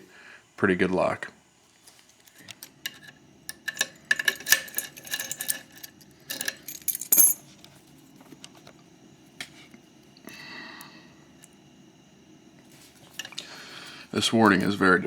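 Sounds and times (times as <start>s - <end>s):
small metal parts clicking: 2.3s - 7.4s.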